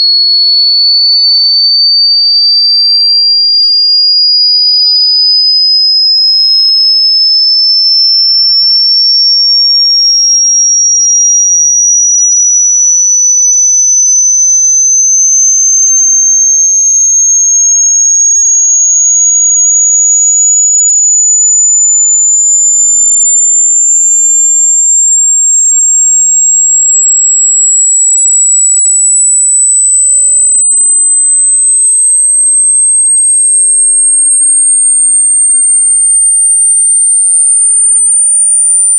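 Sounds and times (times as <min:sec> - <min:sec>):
high-pitched electronic tone sweep: 0:32.7 - 0:38.9.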